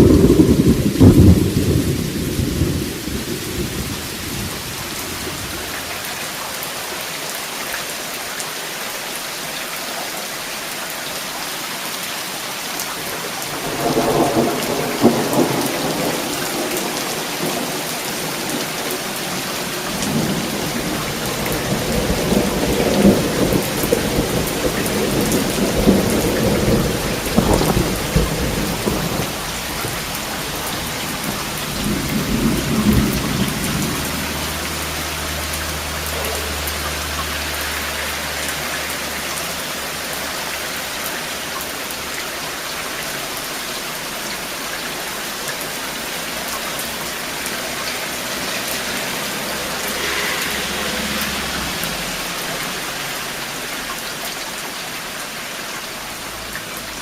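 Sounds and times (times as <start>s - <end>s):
rolling thunder: 0.0s - 6.2s, 13.4s - 36.8s, 48.3s - 52.9s
steady rain: 0.0s - 57.0s.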